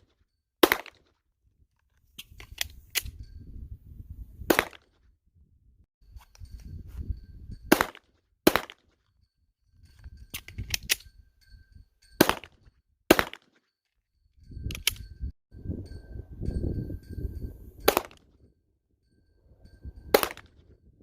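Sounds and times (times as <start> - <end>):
pistol shots: 0.6 - 1.0, 4.5 - 4.8, 7.7 - 8.9, 12.2 - 13.5, 20.2 - 20.5.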